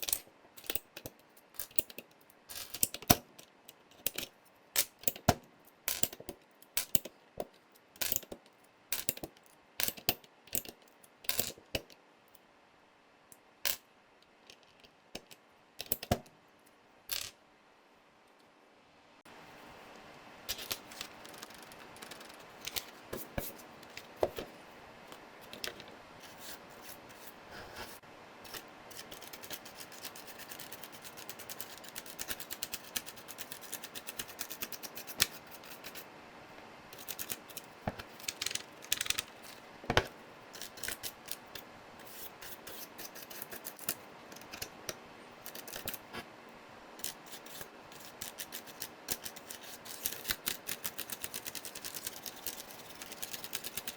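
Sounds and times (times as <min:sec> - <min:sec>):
keycap scraping: 0:20.5 - 0:24.6, 0:37.0 - 0:41.4.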